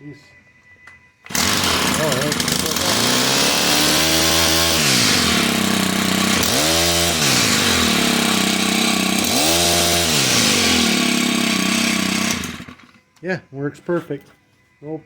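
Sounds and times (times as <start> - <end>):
pole saw engine revving: 1.3 - 13.0.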